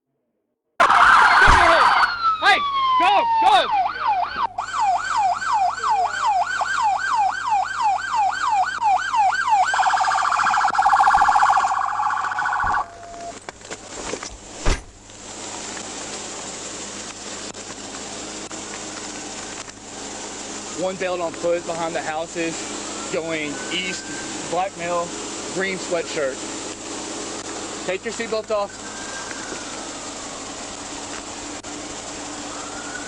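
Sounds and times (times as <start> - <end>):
police siren yelping and warbling: 0.8 - 13.4, 22.9 - 26.2, 27.9 - 31.0, 32.2 - 33.0
thump: 1.4 - 1.7, 14.6 - 15.0
steady hum: 9.5 - 33.0.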